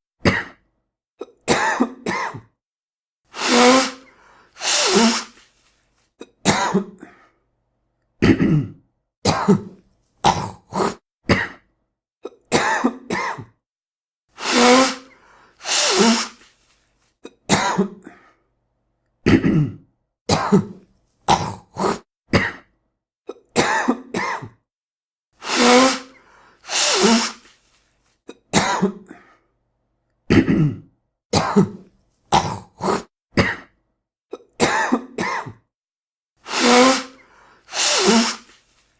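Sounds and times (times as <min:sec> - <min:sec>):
man coughing and clearing throat: 0:00.2 - 0:00.6, 0:01.2 - 0:02.6, 0:06.2 - 0:07.2, 0:08.2 - 0:13.6, 0:17.3 - 0:18.2, 0:19.2 - 0:22.7, 0:23.3 - 0:24.6, 0:28.3 - 0:29.3, 0:30.3 - 0:35.7
nose blowing: 0:03.3 - 0:05.6, 0:14.4 - 0:16.7, 0:25.4 - 0:27.8, 0:36.4 - 0:38.9.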